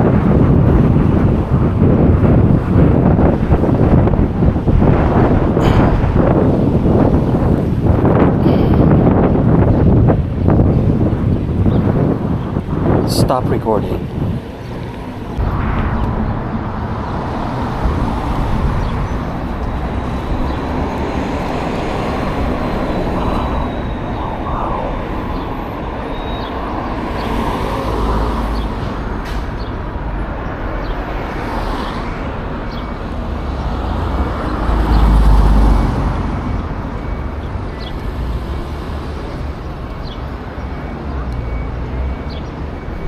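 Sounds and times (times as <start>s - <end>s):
city street traffic: 0.0s - 43.0s
low rumble: 14.0s - 27.4s.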